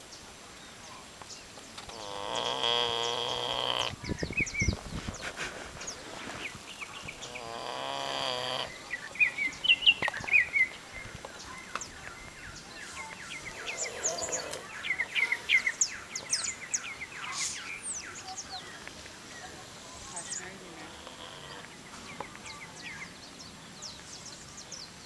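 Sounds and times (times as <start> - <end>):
small birds chirping: 0.0 - 25.0
pig snoring: 1.9 - 4.0, 7.0 - 9.0, 13.5 - 15.4, 20.7 - 21.7.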